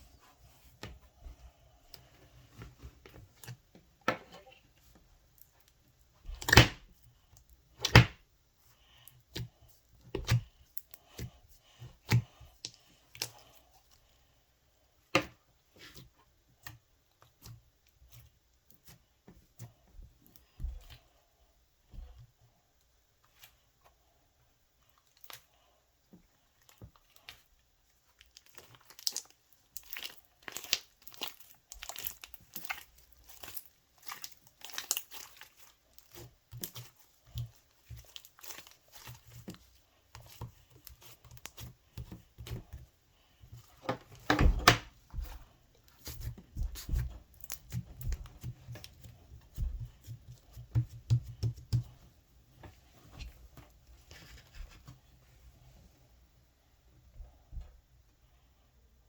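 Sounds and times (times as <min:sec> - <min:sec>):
crinkling and crackling: 0:24.8 - 0:55.8.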